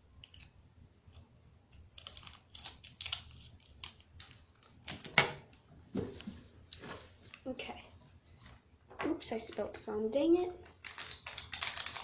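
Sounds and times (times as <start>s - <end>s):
plastic packet clicks and crinkles: 10.6s - 12.0s.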